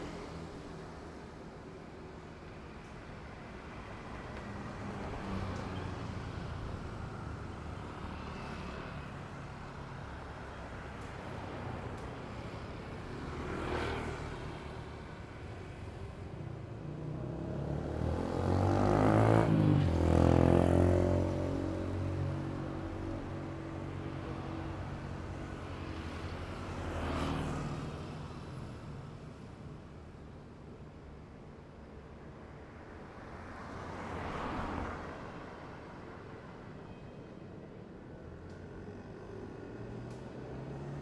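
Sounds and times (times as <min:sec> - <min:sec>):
steady traffic noise: 0:00.0 - 0:41.0
vehicles passing: 0:10.9 - 0:29.1, 0:33.1 - 0:35.7
loud engine passing close: 0:17.3 - 0:22.2.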